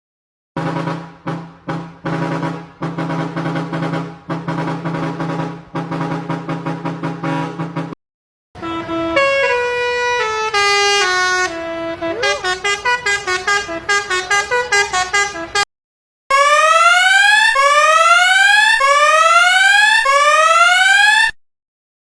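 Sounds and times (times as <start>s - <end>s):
musical car horn playing a tune: 8.6s - 15.7s.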